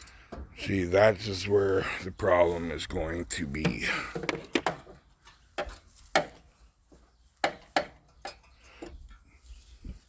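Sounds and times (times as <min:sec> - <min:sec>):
hand tools clicking on metal bolts: 0:07.4 - 0:09.0.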